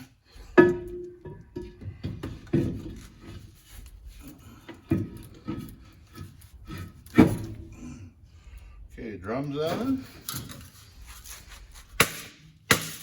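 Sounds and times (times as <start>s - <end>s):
steel brake drum clunking: 0.4s - 3.6s
metal scraping: 2.5s - 8.0s.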